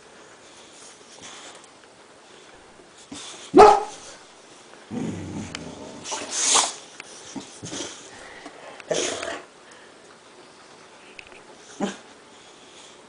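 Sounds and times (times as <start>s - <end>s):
dog barking: 3.6s - 4.0s.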